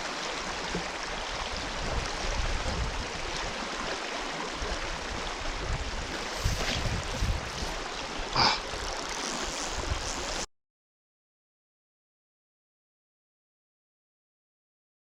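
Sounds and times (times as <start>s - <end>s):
river water running: 0.0s - 10.5s
wind on microphone: 1.1s - 3.6s, 4.6s - 10.5s.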